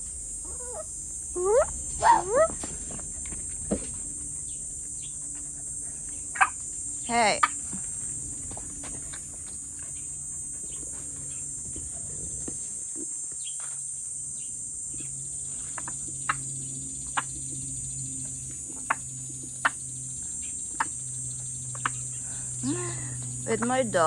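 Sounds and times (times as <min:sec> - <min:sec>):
high-pitched insect drone: 0:00.0 - 0:24.0
low hum: 0:00.0 - 0:24.0.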